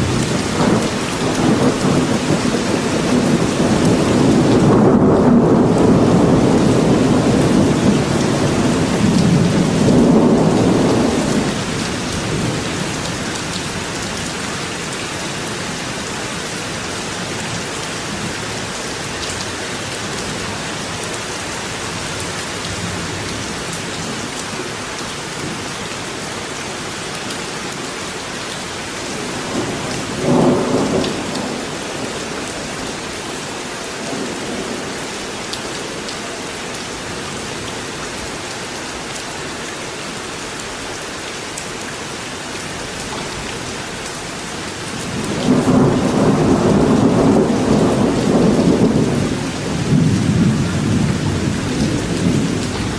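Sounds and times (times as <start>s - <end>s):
low rumble of thunder: 0.0s - 13.2s, 29.1s - 33.1s, 45.0s - 52.9s
steady rain falling: 0.0s - 52.9s.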